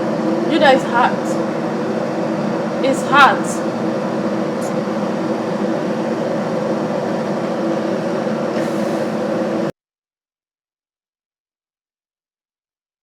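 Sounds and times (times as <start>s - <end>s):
machine hum with droning tones: 0.0s - 9.7s.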